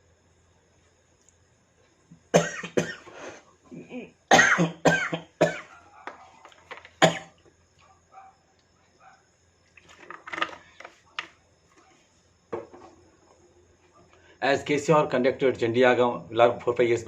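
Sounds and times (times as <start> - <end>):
man coughing hard: 2.3 - 3.1, 4.3 - 5.7, 7.0 - 7.3
man clearing throat: 2.4 - 3.1, 3.7 - 5.7.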